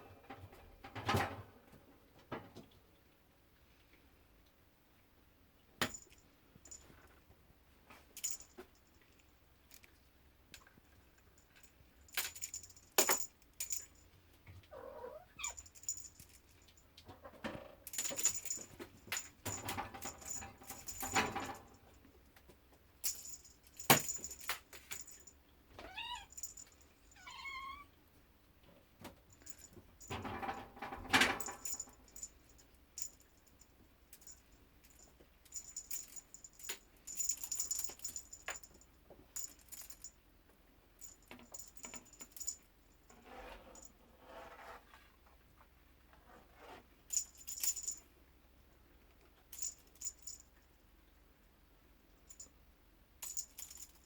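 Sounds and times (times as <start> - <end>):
light clicks and clinks: 7.9 - 14.2, 15.4 - 17.2, 17.9 - 22.0, 23.0 - 25.4, 29.3 - 40.2, 41.0 - 42.7, 47.1 - 48.1, 53.2 - 54.0
cat meowing: 14.7 - 15.6, 25.8 - 26.4, 27.1 - 28.0.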